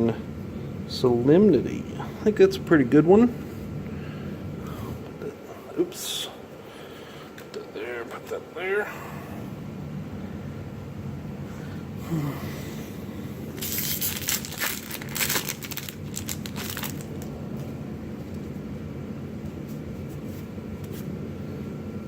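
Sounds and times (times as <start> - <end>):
foil wrapper tearing and crinkling: 13.6 - 17.3.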